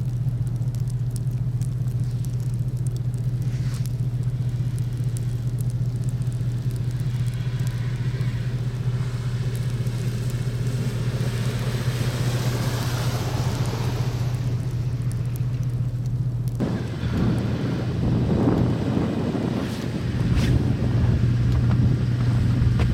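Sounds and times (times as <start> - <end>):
steady low hum: 0.0 - 22.9
car passing: 6.8 - 15.6.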